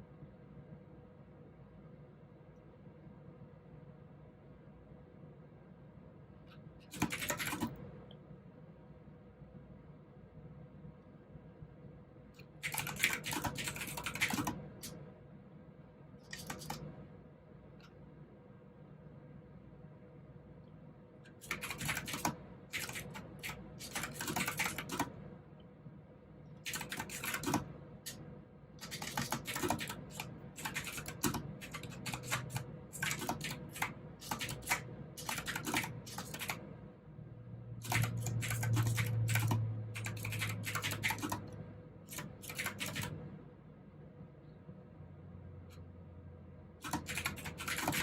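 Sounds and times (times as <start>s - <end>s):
mechanical keyboard typing: 6.8s - 7.8s, 12.4s - 15.0s, 16.2s - 16.9s, 21.4s - 25.2s, 26.6s - 28.2s, 28.8s - 36.7s, 37.8s - 43.2s, 46.8s - 48.0s.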